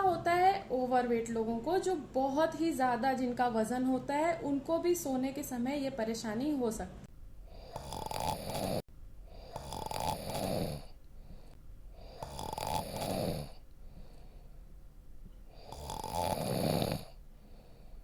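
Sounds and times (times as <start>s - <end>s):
quiet breathing: 7.4s - 18.0s
person snoring: 7.5s - 14.2s, 15.5s - 17.9s.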